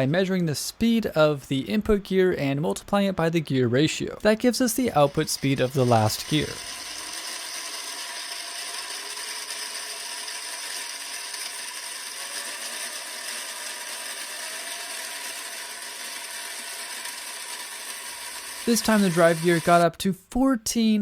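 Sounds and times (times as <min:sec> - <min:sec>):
whir and rattle of plastic gears: 0:04.9 - 0:19.8.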